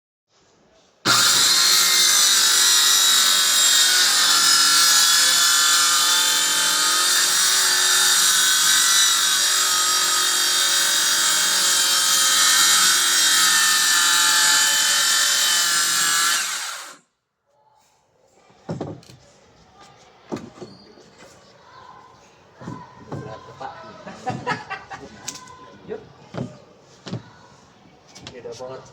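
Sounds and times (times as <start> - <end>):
circular saw cutting plywood: 1.1 - 17.0.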